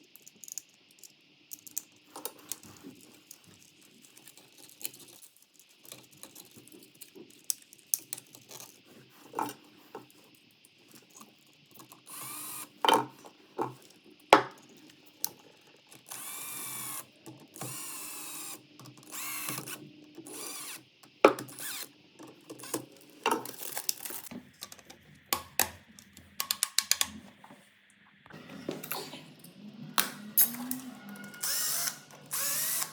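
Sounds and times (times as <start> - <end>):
power drill running: 12.1 - 12.8, 16.1 - 21.9, 30.0 - 32.9
tools clicking and knocking: 18.8 - 25.8.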